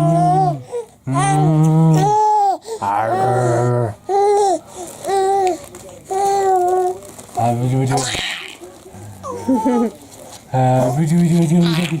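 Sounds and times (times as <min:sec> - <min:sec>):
baby cooing and babbling: 0:00.0 - 0:07.0, 0:07.9 - 0:10.0.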